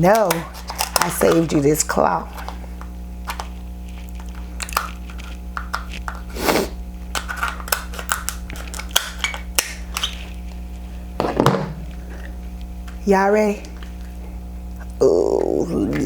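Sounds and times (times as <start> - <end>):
low electrical hum: 0.0 - 16.0
crab shell cracking: 0.1 - 1.6, 2.4 - 6.4, 7.0 - 10.7.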